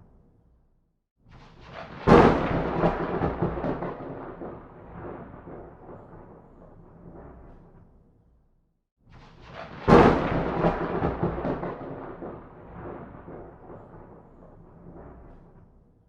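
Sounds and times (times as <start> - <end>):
thunder crack and rumble: 1.6 - 8.0, 9.1 - 16.0.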